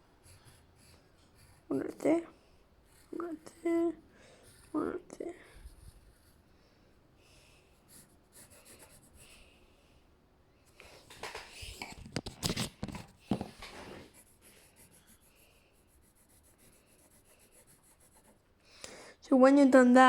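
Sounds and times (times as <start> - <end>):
pencil scratching on paper: 0.0 - 9.6, 13.8 - 18.5
paper rustling: 11.1 - 14.1.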